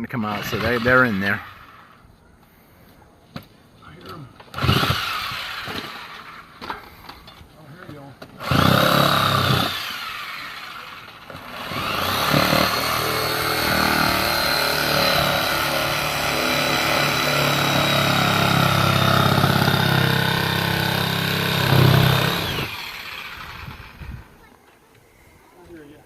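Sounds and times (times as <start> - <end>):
electric motor whining: 4.6 - 6.5, 8.4 - 24.4.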